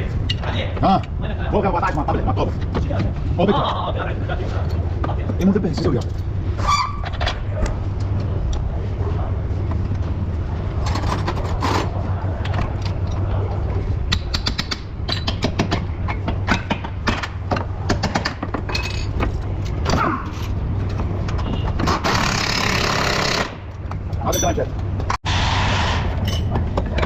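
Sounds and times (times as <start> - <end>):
steady low hum: 0.0 - 21.6
hand tools clicking and clanking: 14.0 - 25.2.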